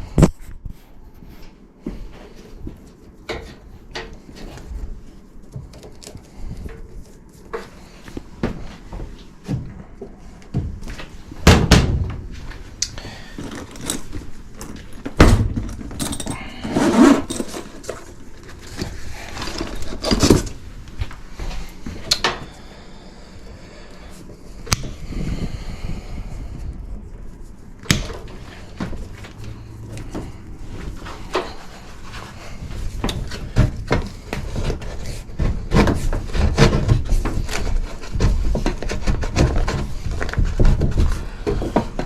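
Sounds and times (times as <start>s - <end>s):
hand tools and metal parts clunking: 1.4s - 22.6s, 27.8s - 42.0s
loud thumps: 11.4s - 12.4s.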